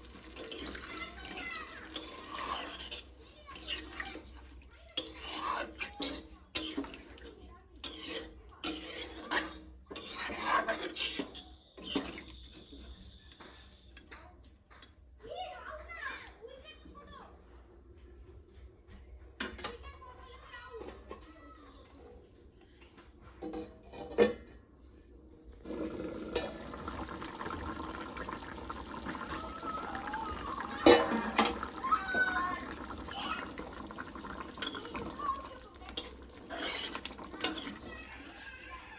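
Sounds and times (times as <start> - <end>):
water pouring: 0.0 - 3.0, 25.7 - 38.9
utensil scraping a pot: 0.0 - 13.2, 23.5 - 24.5, 25.6 - 38.9.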